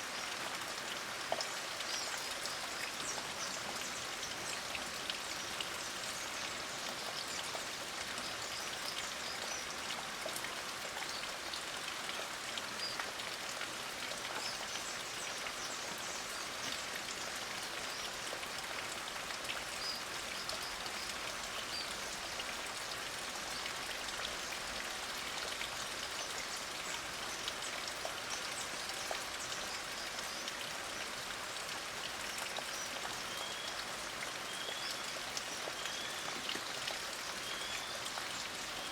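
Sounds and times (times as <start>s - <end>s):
light rain falling: 0.0s - 38.9s.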